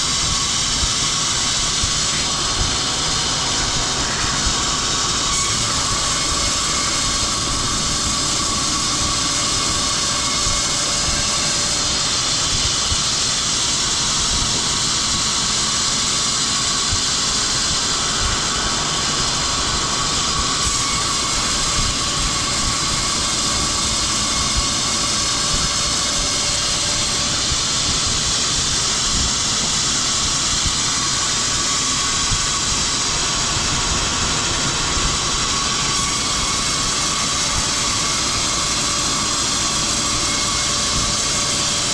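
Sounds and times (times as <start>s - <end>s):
woodworking machinery running: 0.0s - 41.9s.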